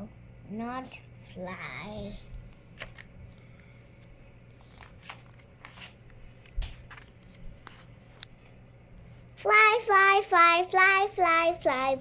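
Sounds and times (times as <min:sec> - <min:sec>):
book pages rustling: 0:02.3 - 0:09.2.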